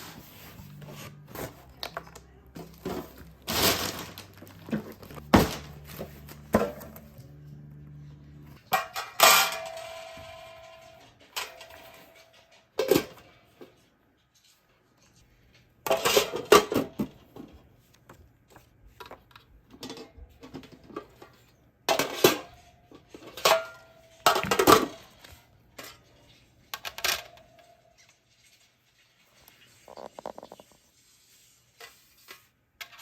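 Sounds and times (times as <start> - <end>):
metal trays clattering: 2.6 - 7.1, 8.6 - 13.3, 15.9 - 17.2.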